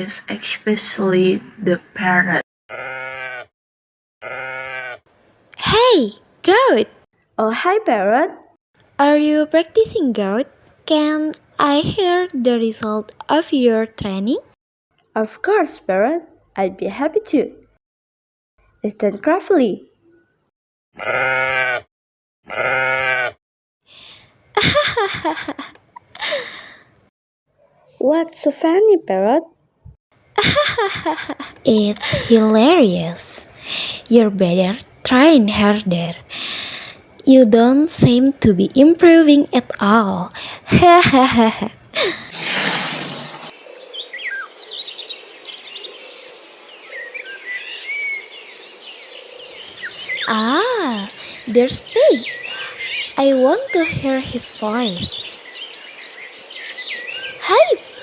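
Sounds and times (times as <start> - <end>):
steady high insect buzz: 42.3 - 43.7
birds chirping and whistling: 42.4 - 46.3, 46.9 - 58.0.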